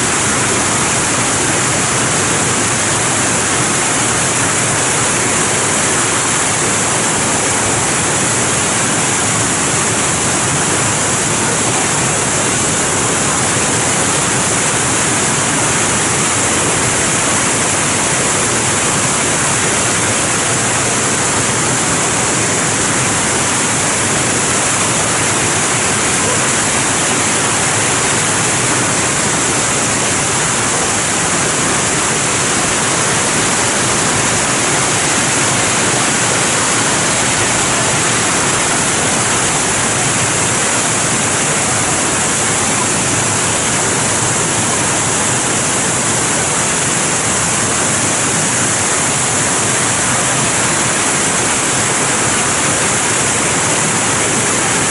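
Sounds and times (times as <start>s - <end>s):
fountain water splashing: 0.0s - 54.9s.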